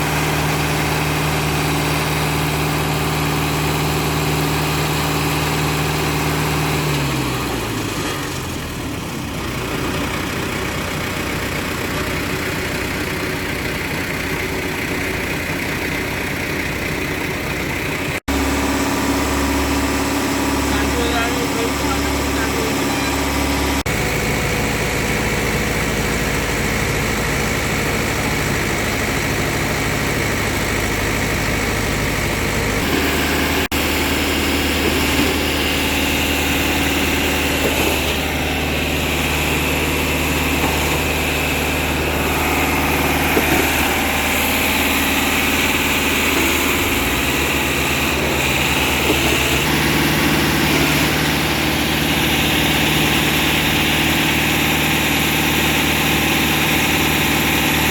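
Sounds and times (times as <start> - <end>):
concrete mixer engine running: 0.0 - 57.9.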